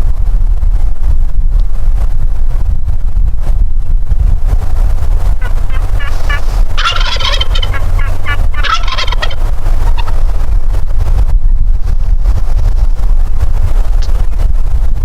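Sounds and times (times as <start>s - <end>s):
wind rumble on microphone: 0.0s - 15.0s
turkey gobbling: 5.4s - 10.2s.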